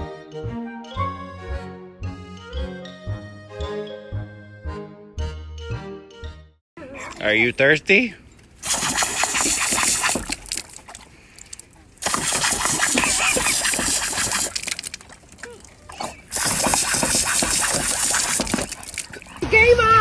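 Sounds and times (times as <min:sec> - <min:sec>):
water spraying from a hose: 0:08.6 - 0:11.0, 0:12.0 - 0:15.4, 0:16.0 - 0:19.4
water spattering: 0:08.6 - 0:19.4.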